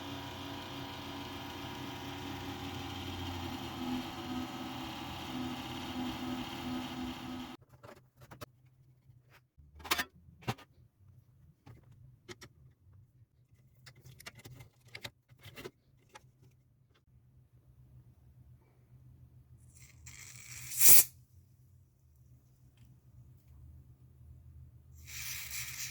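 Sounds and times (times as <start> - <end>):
power supply whirring hum: 0.0 - 7.6.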